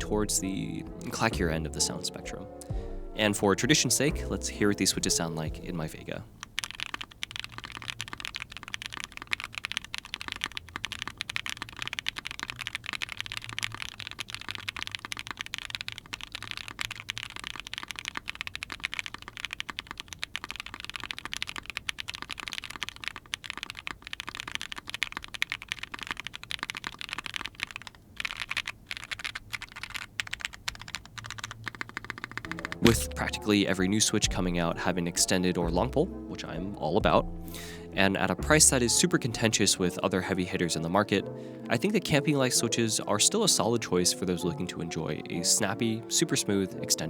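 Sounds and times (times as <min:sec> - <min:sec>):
fast typing on mechanical keyboard: 0:05.8 - 0:33.0.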